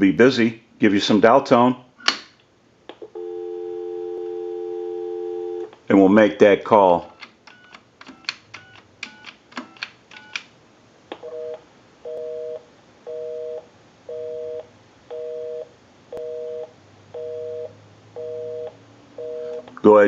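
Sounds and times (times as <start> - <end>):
busy signal beeps: 3.2 - 5.6
touch-tone keypad tones: 7.1 - 10.4.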